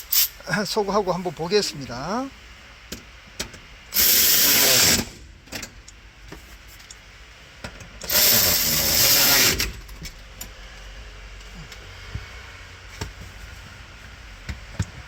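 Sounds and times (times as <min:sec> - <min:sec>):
power tool running: 0:03.9 - 0:05.2, 0:08.1 - 0:09.7.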